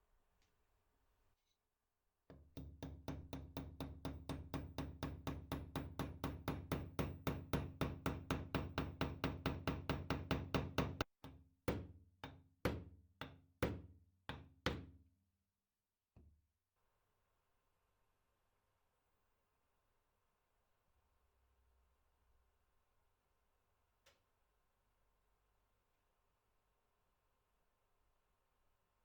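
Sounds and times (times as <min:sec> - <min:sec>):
hammer knocking on handle: 0:02.3 - 0:15.0.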